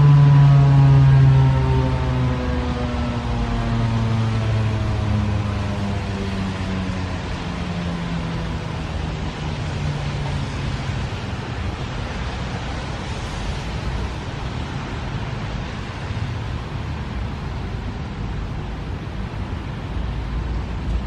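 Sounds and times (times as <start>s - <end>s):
warning siren winding down: 0.0s - 13.6s.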